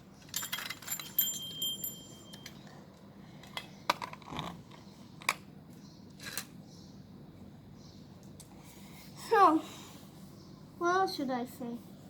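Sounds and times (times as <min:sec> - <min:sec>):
small bell ringing: 0:00.3 - 0:02.6.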